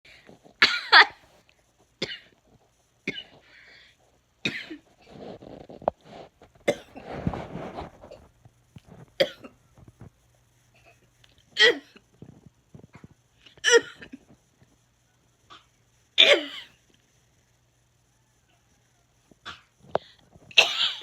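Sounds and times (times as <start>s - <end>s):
person coughing: 0.6s - 1.2s, 11.6s - 12.0s, 16.2s - 16.7s, 20.6s - 21.0s.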